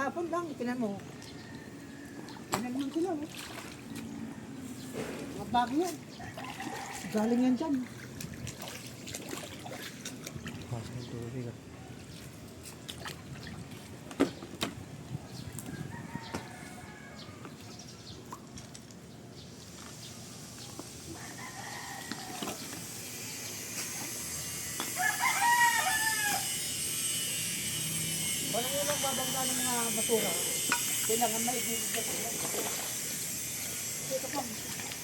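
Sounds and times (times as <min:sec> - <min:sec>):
rooster crowing: 0:01.3 - 0:02.3, 0:06.2 - 0:07.4, 0:15.7 - 0:17.5, 0:21.1 - 0:22.7, 0:24.9 - 0:26.8.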